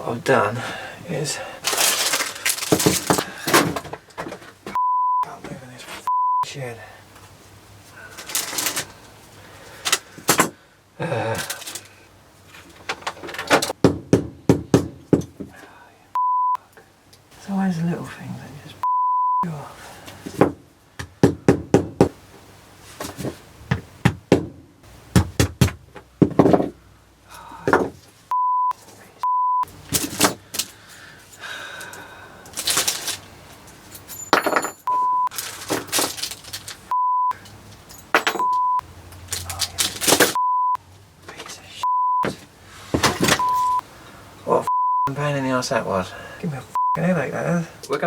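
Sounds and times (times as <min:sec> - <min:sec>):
censor bleeps: 0:04.8 - 0:05.3, 0:06.0 - 0:06.5, 0:16.2 - 0:16.6, 0:18.8 - 0:19.5, 0:28.3 - 0:29.7, 0:34.9 - 0:35.3, 0:36.9 - 0:37.4, 0:38.4 - 0:38.8, 0:40.4 - 0:40.8, 0:41.8 - 0:42.3, 0:43.4 - 0:43.8, 0:44.7 - 0:45.1, 0:46.8 - 0:47.0
person swearing: 0:11.0 - 0:11.6.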